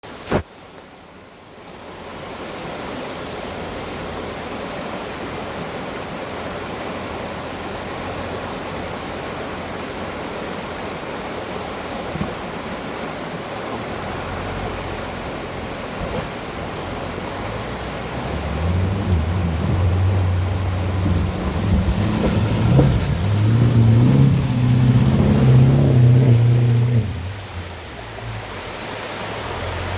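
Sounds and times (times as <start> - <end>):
river water rushing: 0.0 - 29.9
faint low engine hum: 13.7 - 29.9.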